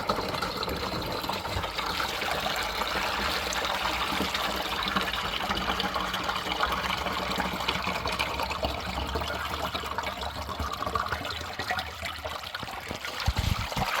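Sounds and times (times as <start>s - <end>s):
spring water running and splashing: 10.4s - 14.0s.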